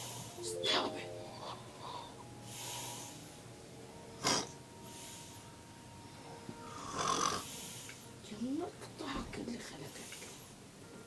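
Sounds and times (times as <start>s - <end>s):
man snoring: 4.2s - 4.6s, 6.8s - 7.6s
sharp snort: 4.2s - 4.6s.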